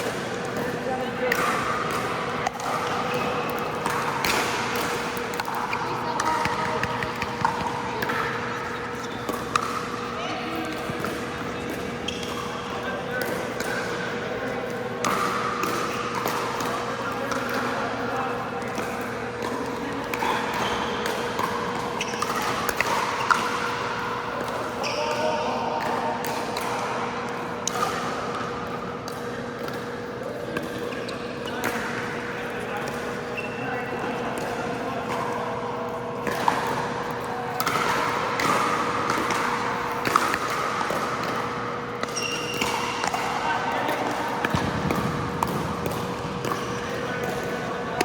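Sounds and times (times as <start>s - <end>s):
steady hum and hall noise: 0.0s - 48.0s
ball bouncing on court: 0.5s - 13.8s, 24.4s - 25.0s, 37.5s - 48.0s
paddle hitting ball: 42.0s - 48.0s.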